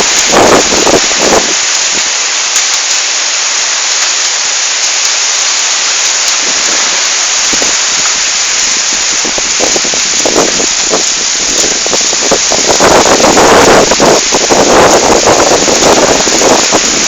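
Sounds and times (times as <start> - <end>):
wind gusts buffeting microphone: 0.0 - 2.0, 8.5 - 17.0
heavy rain pouring: 0.0 - 17.0.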